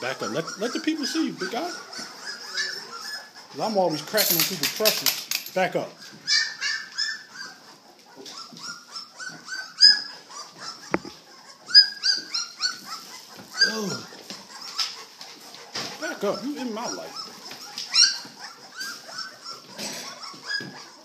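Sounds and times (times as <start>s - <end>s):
dog whining with high yelps: 0.0s - 5.4s, 6.0s - 21.0s.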